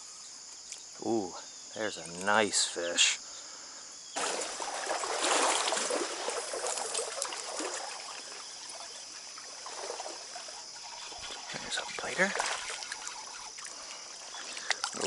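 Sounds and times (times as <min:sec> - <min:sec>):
crickets chirring: 0:00.0 - 0:15.0
stream water trickling: 0:04.2 - 0:15.0.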